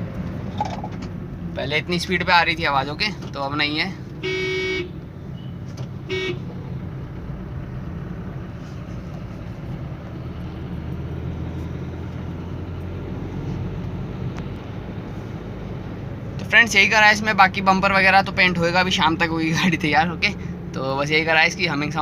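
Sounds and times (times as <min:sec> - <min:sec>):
engine and road noise in car: 0:00.0 - 0:22.0
car horn toots: 0:04.2 - 0:06.5.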